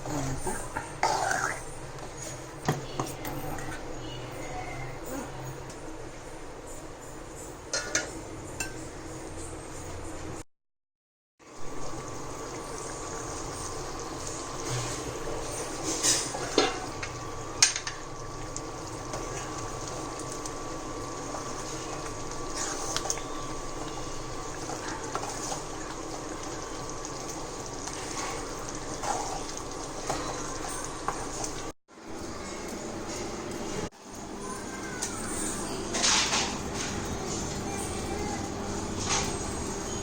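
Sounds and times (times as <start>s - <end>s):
gravy bubbling in a pan: 11.6s - 31.8s.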